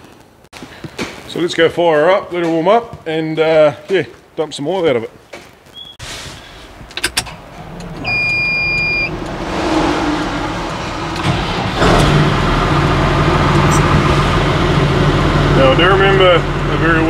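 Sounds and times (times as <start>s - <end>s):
tractor engine starting and idling: 6.6s - 17.0s
dashboard warning beep: 8.0s - 9.2s.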